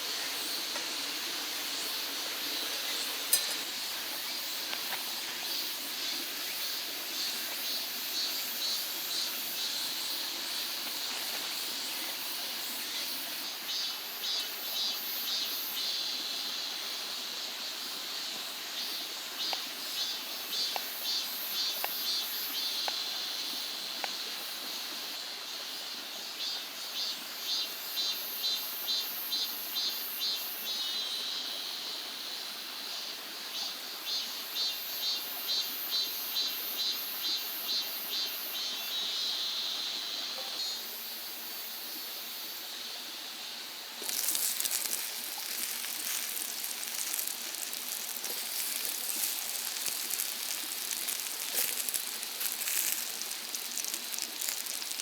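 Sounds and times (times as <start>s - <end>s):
insects calling in pulses: 0.0s - 23.4s, 40.6s - 55.0s
mountain stream hiss: 0.0s - 55.0s
faint ticks: 44.0s - 55.0s.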